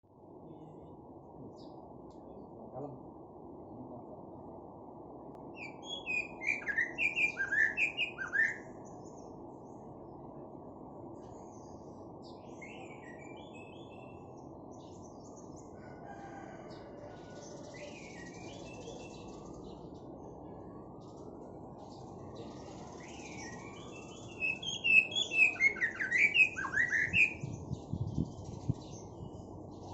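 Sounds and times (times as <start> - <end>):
bird singing whistled notes: 5.6 - 8.8, 12.3 - 14.3, 17.6 - 19.8, 22.4 - 29.9.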